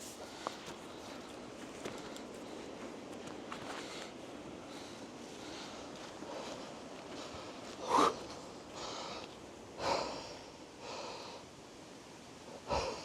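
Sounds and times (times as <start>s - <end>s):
heavy breathing: 3.6s - 11.5s
person sniffing hard: 7.8s - 8.2s.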